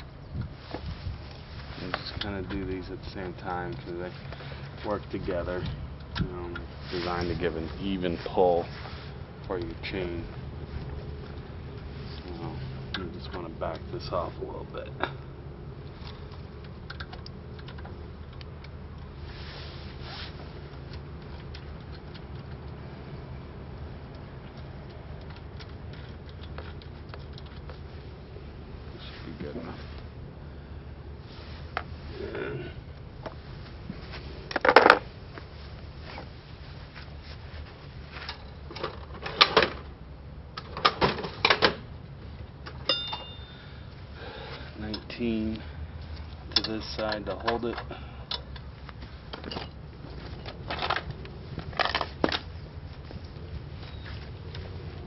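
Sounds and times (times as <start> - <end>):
steady low hum: 0.0 - 55.0
metal tools clanking: 42.7 - 43.7, 49.3 - 52.4
metallic ring: 42.8 - 43.8.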